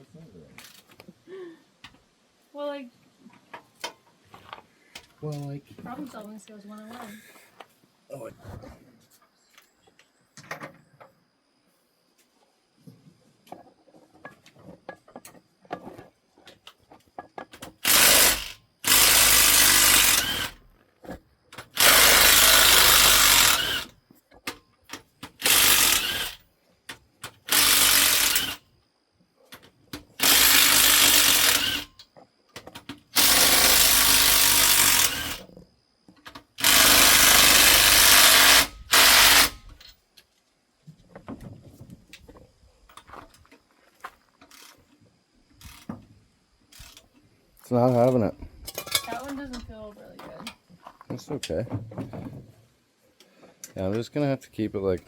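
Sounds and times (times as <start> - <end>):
impact wrench bursts: 17.7 - 20.6, 21.6 - 24.0, 25.2 - 26.4, 27.2 - 28.7, 30.2 - 32.0, 33.1 - 35.5, 36.6 - 39.8.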